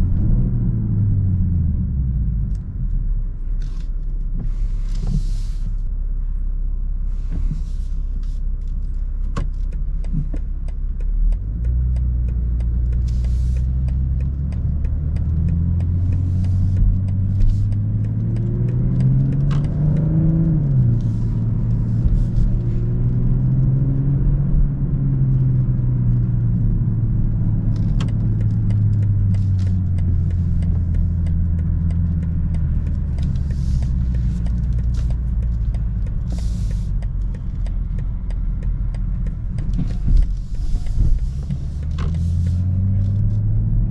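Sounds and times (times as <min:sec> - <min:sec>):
car engine accelerating: 0:00.0 - 0:43.9.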